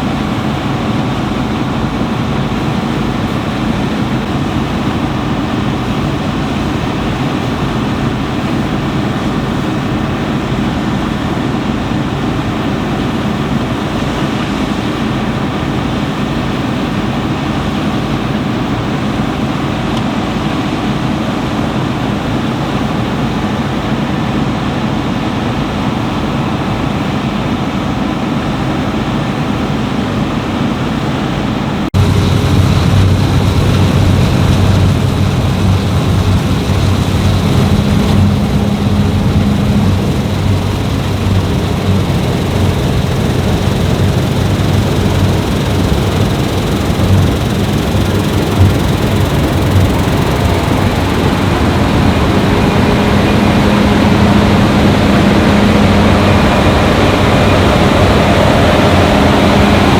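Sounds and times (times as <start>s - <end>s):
combine harvester droning: 32.0s - 59.9s.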